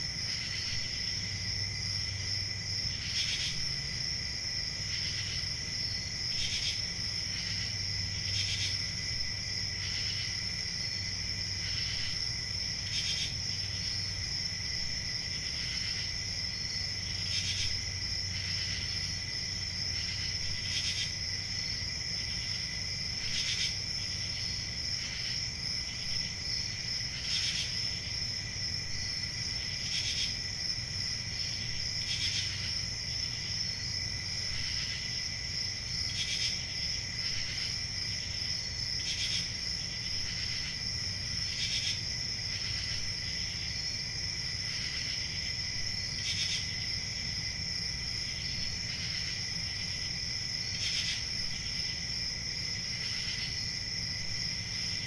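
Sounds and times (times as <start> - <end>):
crickets chirping: 0.0 - 55.0.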